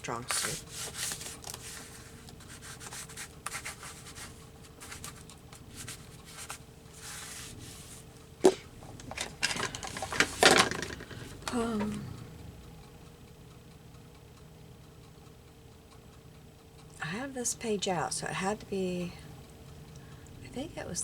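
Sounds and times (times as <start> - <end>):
paper rubbed by hand: 0.2 - 8.1.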